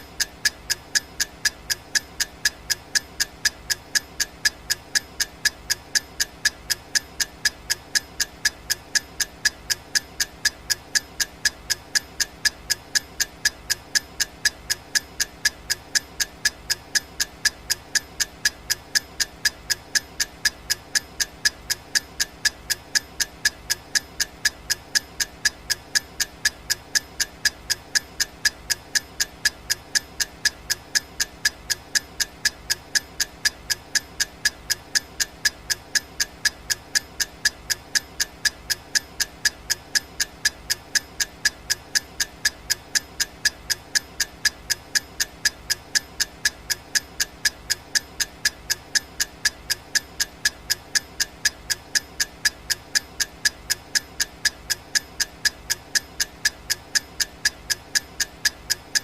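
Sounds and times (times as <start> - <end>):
clock ticking: 0.0 - 59.0.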